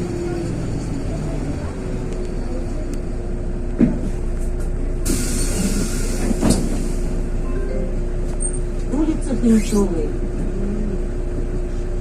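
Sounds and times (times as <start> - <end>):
bus engine and road rumble: 0.0 - 12.0
hiss: 5.1 - 7.0.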